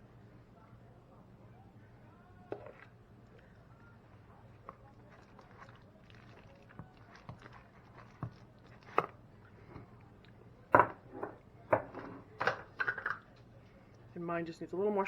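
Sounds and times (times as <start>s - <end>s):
faint steady hum: 0.0s - 15.0s
kitchen clicks and knocks: 10.7s - 13.2s.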